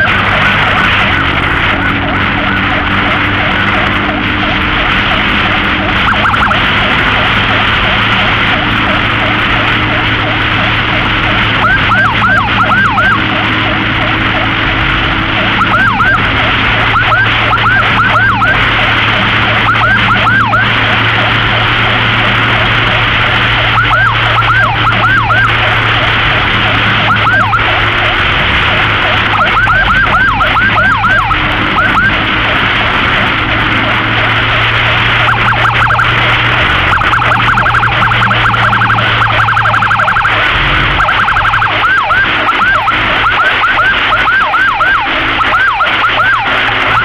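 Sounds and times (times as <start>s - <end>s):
low engine hum: 0.0s - 47.0s
road and wind noise: 0.0s - 47.0s
siren whooping: 0.0s - 47.0s.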